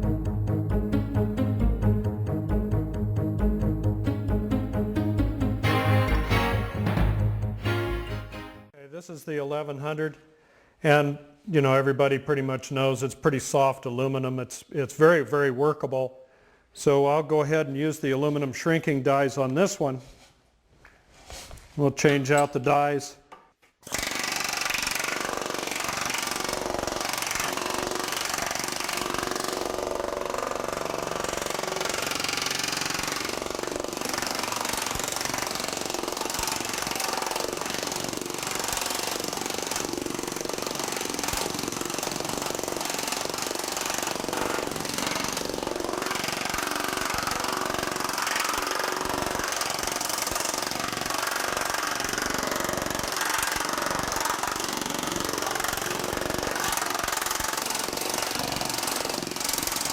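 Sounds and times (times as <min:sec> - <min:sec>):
pneumatic power hammer blows: 0:23.8 - 0:59.9.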